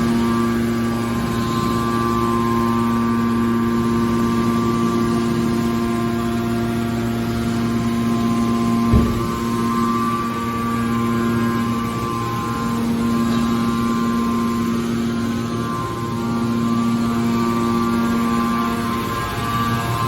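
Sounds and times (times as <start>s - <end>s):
hydraulic pump motor humming: 0.0s - 20.0s
thump: 8.9s - 9.5s.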